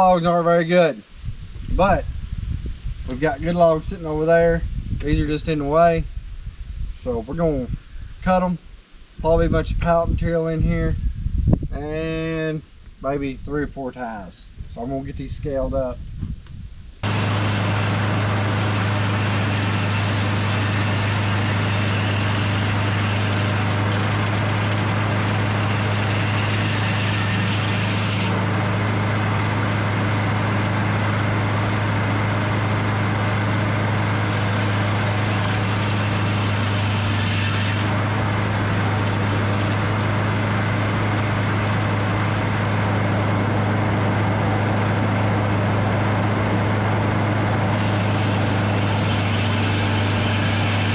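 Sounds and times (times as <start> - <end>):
large engine running steadily: 17.0 - 50.9.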